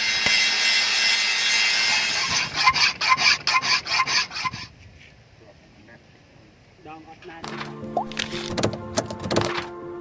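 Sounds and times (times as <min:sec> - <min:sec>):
hand tool scraping: 0:00.0 - 0:05.1.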